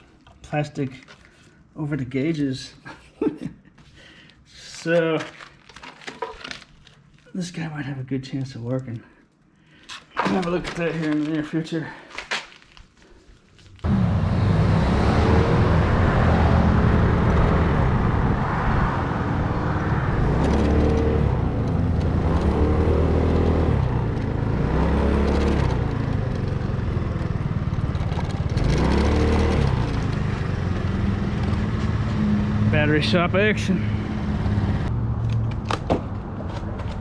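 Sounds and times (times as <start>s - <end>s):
motor vehicle engine revving: 13.8s - 35.0s.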